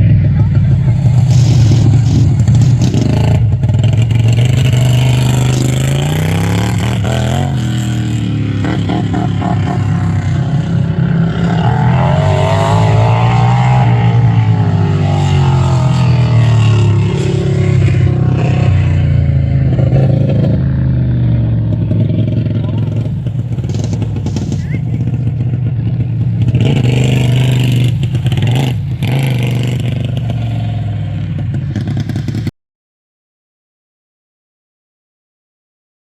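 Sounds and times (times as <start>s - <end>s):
lawn tractor engine revving: 0.0s - 10.2s, 11.1s - 30.6s
second engine revving: 0.0s - 32.5s.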